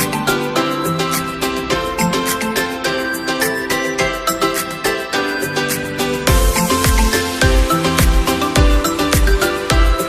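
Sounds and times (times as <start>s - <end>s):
upbeat electronic music: 0.0s - 10.0s
kick drum beat: 6.3s - 10.0s.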